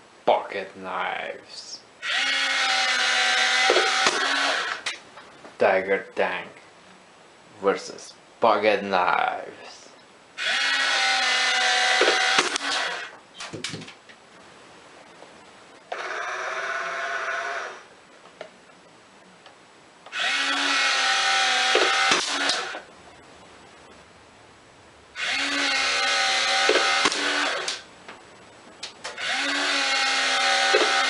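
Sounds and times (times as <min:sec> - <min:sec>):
toy tank motor whirring: 0:02.0 - 0:04.8, 0:10.4 - 0:13.1, 0:15.9 - 0:17.8, 0:20.1 - 0:22.8, 0:25.2 - 0:27.8, 0:29.2 - 0:31.0.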